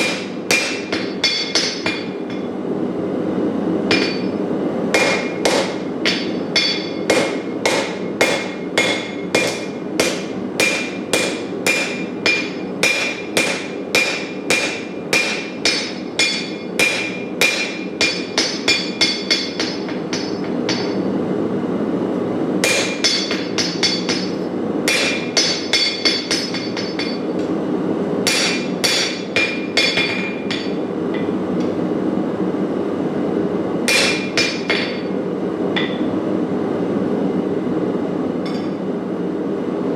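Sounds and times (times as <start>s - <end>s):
hammer striking steel on anvil: 0.0s - 2.5s, 3.9s - 21.1s, 22.6s - 27.5s, 28.2s - 31.7s, 33.9s - 35.2s, 35.8s - 36.1s, 38.4s - 38.8s
forge burner roaring: 0.0s - 39.9s.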